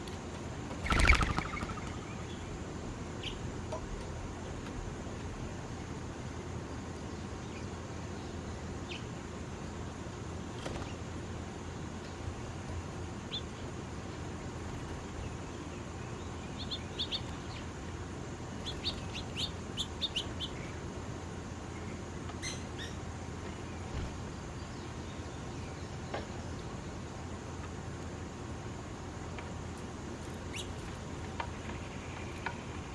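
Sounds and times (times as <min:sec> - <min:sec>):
small birds chirping: 0:00.0 - 0:03.5, 0:13.2 - 0:21.0, 0:21.6 - 0:27.1, 0:30.2 - 0:32.9
steady low background hum: 0:00.0 - 0:32.9.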